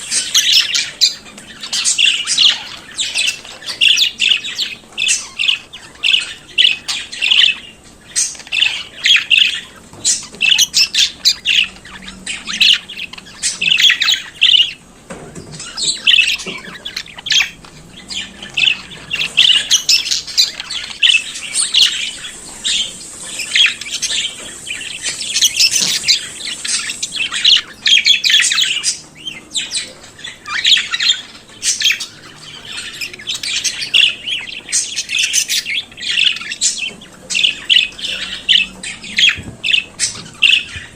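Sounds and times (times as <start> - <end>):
budgerigars chattering and warbling: 0.0 - 40.9.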